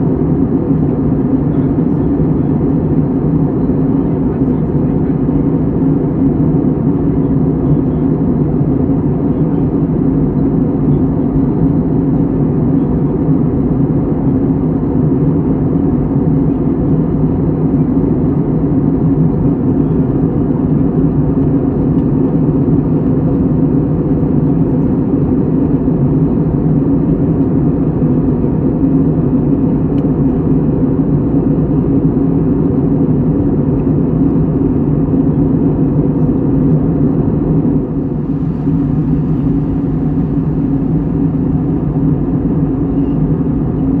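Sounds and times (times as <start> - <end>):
low rumbling white noise: 36.1 - 44.0
faint hum: 37.0 - 44.0.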